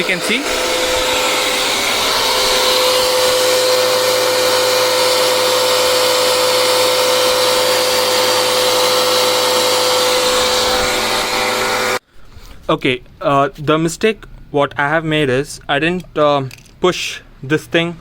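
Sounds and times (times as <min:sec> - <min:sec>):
pressure washer motor droning: 0:00.0 - 0:12.0.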